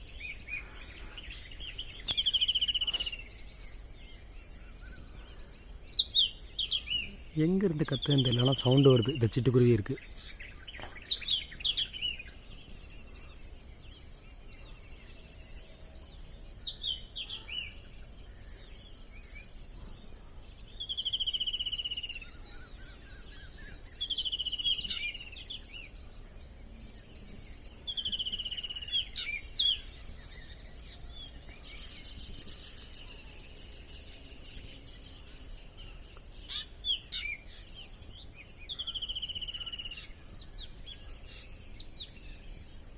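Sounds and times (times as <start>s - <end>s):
bird calling: 0.0s - 3.6s, 38.5s - 42.2s
high insect drone: 0.0s - 42.9s
short bird chirps: 1.9s - 3.4s.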